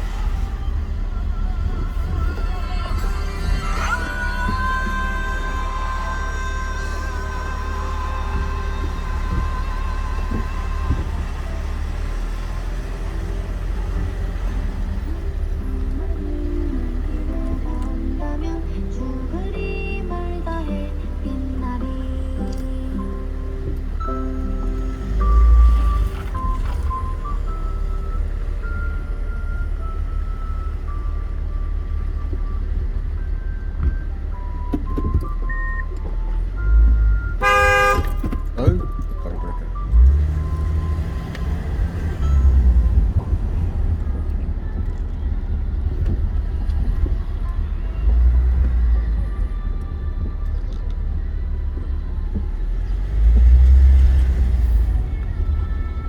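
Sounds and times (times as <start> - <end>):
car road rumble: 0.0 - 56.0
simple tone melody: 0.8 - 56.0
short loud tone: 37.1 - 38.9.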